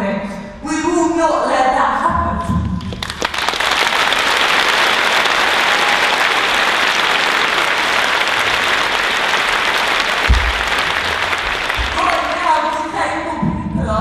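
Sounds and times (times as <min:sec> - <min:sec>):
audience applauding: 0:02.9 - 0:12.8.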